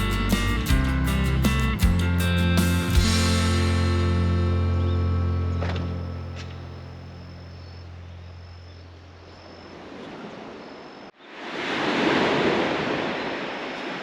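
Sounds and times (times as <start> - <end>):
background music: 0.0 - 6.8
sea waves surging on shore: 11.3 - 14.0.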